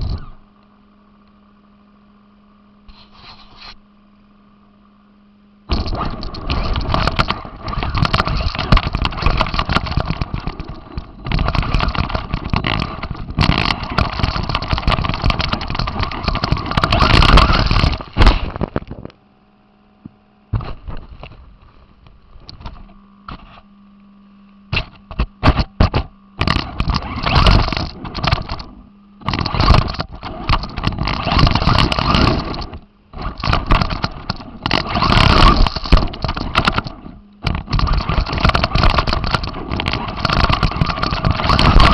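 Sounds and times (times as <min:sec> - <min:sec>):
rattling rc car motor: 0:00.0 - 0:00.4, 0:05.7 - 0:18.8, 0:24.7 - 0:41.9
faint steady hum: 0:00.0 - 0:41.9.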